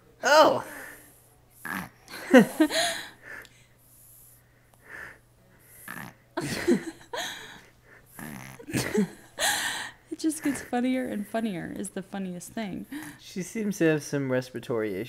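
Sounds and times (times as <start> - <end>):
baby snoring and snorting: 1.6 - 2.1, 5.7 - 6.2, 8.1 - 8.9.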